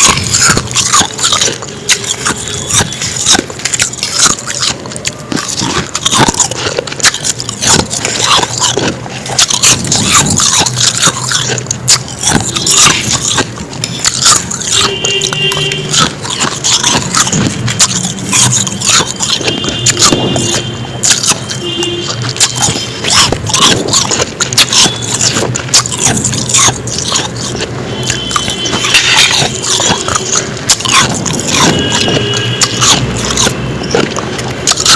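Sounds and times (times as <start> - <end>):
chewing crunchy ice: 0.0 - 34.9.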